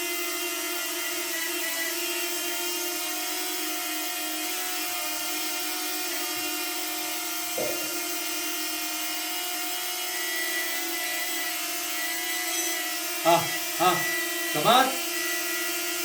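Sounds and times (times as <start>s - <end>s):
drone propellers humming: 7.6s - 8.4s.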